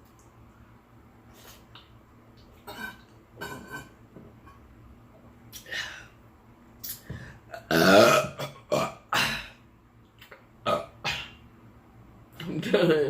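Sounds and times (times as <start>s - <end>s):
person burping: 2.6s - 4.0s, 7.5s - 9.6s, 10.7s - 11.4s.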